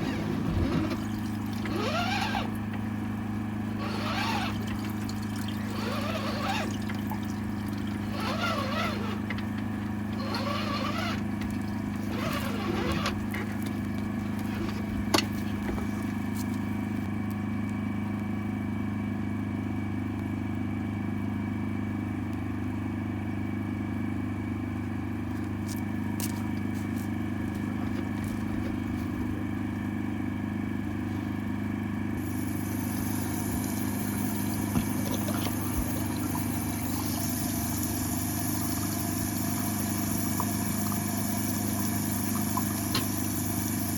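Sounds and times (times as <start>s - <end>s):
pressure washer engine hum: 0.0s - 17.6s, 24.7s - 43.9s.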